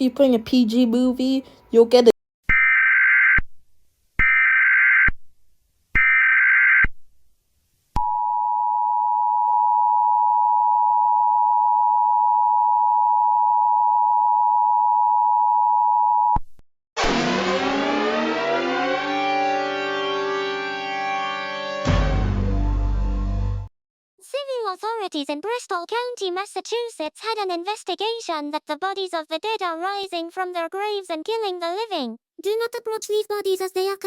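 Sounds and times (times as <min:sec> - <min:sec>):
eerie music with gliding tones: 0:17.1 - 0:23.0.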